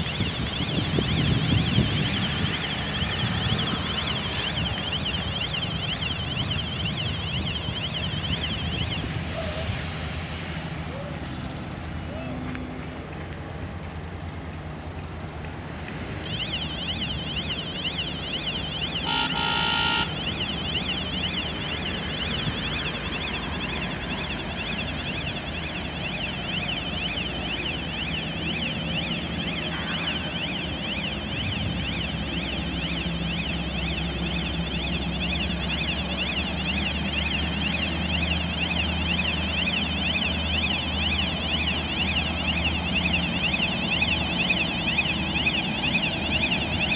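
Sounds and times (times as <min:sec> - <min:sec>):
warbling warning alarm: 0:00.0 - 0:10.3, 0:15.9 - 0:46.9
horn toot: 0:19.0 - 0:20.2.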